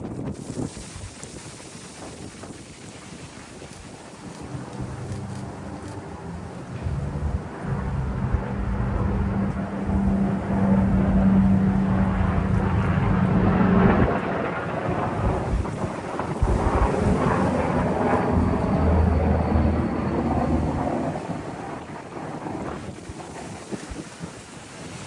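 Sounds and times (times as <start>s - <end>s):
wind buffeting microphone: 0.0s - 25.0s
low hum: 3.8s - 21.8s.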